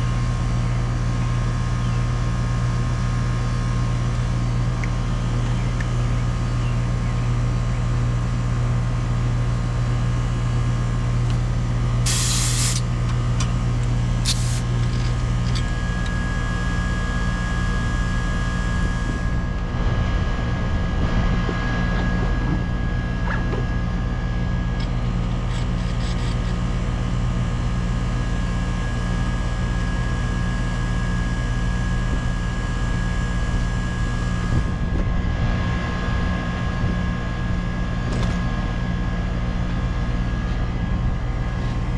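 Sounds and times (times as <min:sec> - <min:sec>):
air conditioner unit humming: 0:00.0 - 0:41.9
short hiss: 0:12.1 - 0:12.8, 0:14.3 - 0:14.6.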